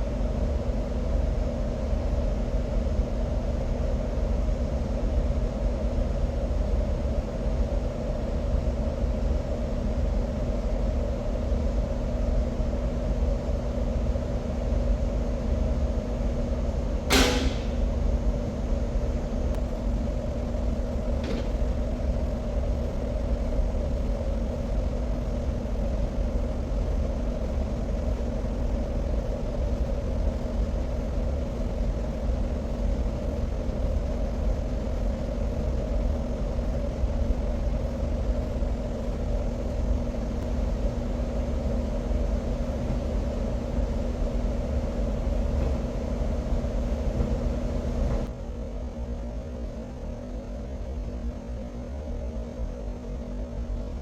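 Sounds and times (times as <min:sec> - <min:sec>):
sharp click: 0:17.1 - 0:17.9
heavy machinery rumbling: 0:19.6 - 0:31.0.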